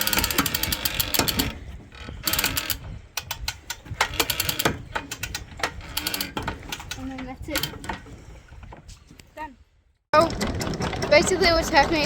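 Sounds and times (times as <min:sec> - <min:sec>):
anchor chain clattering: 0:00.0 - 0:08.2.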